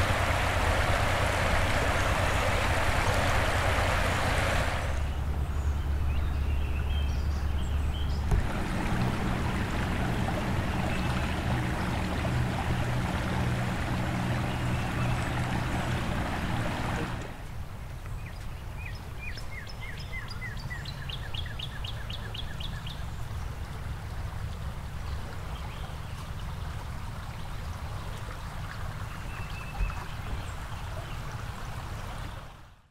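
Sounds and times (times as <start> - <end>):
rushing floodwater: 0.0 - 5.5, 8.3 - 18.0
low steady hum: 0.0 - 18.2.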